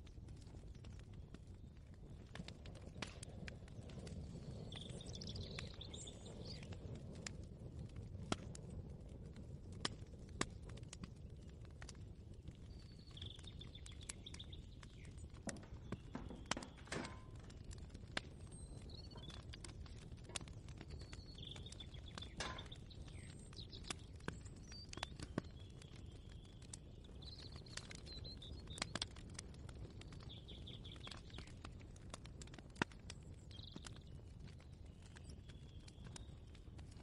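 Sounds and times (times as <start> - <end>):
faint bird chirps: 3.2 - 7.0, 12.6 - 17.7, 18.3 - 29.0, 30.1 - 31.6, 33.4 - 36.5.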